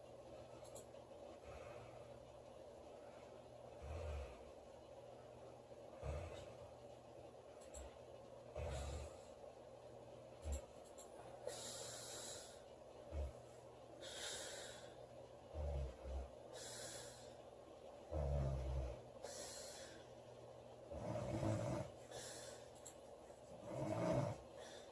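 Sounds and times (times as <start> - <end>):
airy hissing breaths: 11.2 - 15.2, 15.8 - 17.6, 19.1 - 20.2, 20.9 - 22.9, 23.6 - 24.9
person snoring: 15.5 - 17.3, 18.1 - 19.9, 20.9 - 22.0, 23.6 - 24.9.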